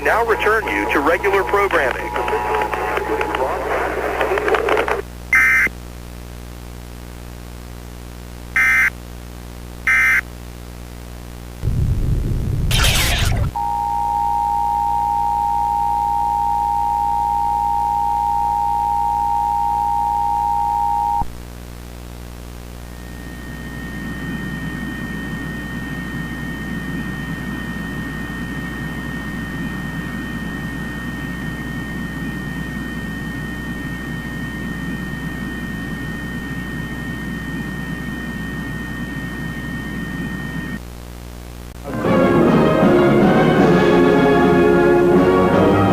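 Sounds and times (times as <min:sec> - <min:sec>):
low buzzing hum: 0:00.0 - 0:41.9
harsh noisy buzz: 0:11.6 - 0:21.4
two-tone attention signal: 0:13.1 - 0:21.3
higher two-note tone: 0:13.6 - 0:21.2.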